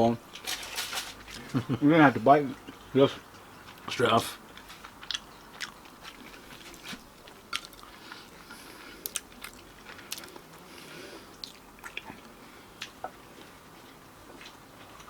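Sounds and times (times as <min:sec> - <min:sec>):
person chewing and crunching: 0:04.5 - 0:15.0.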